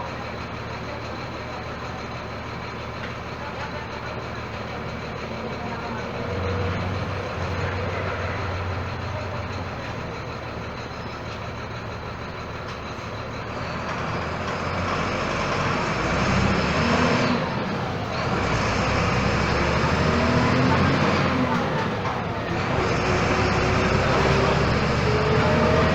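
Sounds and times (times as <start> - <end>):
bus engine running: 0.0 - 25.9
rising engine whine: 13.8 - 25.9.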